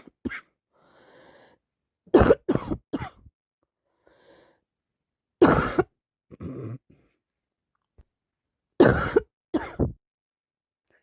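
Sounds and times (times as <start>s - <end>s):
woman clearing throat: 5.4s - 6.8s.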